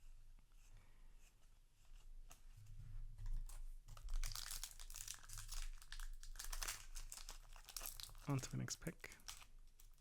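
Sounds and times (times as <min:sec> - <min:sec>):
foil wrapper crinkling: 0:04.0 - 0:10.0.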